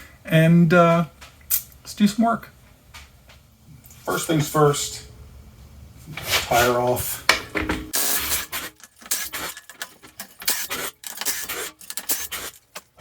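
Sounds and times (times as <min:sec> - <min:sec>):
impact wrench bursts: 0:06.4 - 0:13.0.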